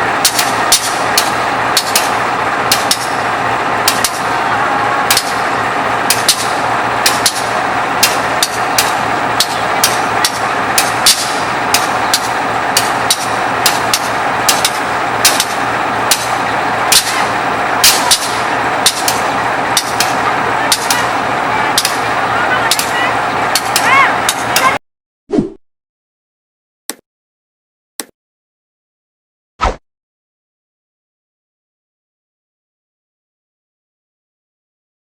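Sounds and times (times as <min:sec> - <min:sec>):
diesel locomotive idling: 0:00.0 - 0:24.8
sharp clicks or knocks: 0:06.1 - 0:16.3.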